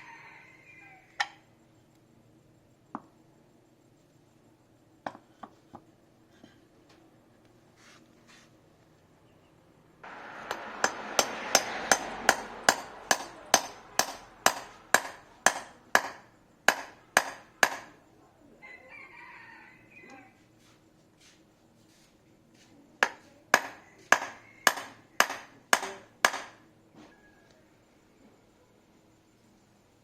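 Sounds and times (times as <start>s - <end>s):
hammer blows: 10.0s - 18.0s, 23.0s - 26.6s.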